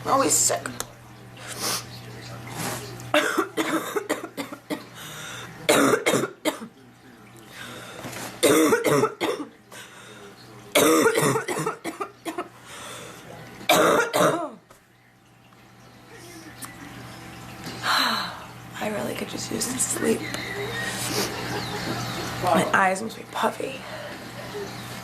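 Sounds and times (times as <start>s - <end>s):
woman coughing: 3.2s - 4.9s, 5.7s - 6.6s, 8.4s - 9.5s, 10.8s - 12.5s, 13.7s - 14.6s.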